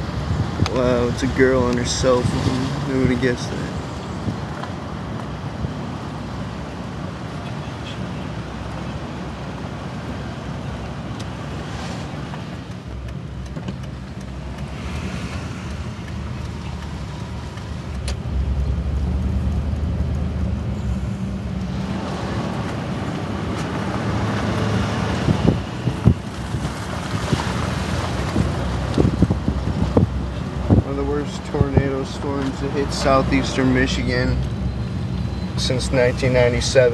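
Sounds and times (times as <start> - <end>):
wind noise on microphone: 0.0 - 6.0, 14.7 - 32.2
car road and engine rumble: 0.0 - 36.9.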